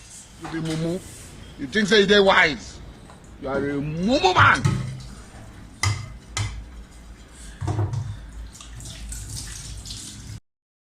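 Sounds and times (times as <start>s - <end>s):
dishes knocking in sink: 5.8s - 6.6s
water running: 8.3s - 10.4s.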